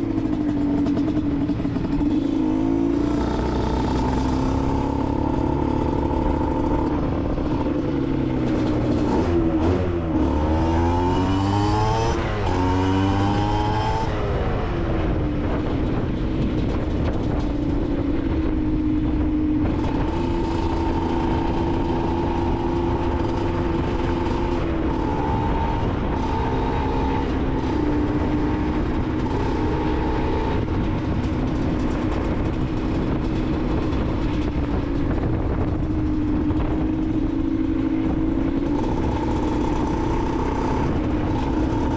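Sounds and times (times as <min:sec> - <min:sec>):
two-stroke motorcycle engine revving: 0:00.0 - 0:41.9.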